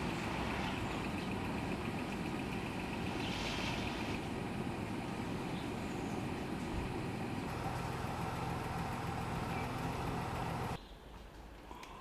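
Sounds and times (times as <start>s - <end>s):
vehicle engine running: 0.0s - 10.8s.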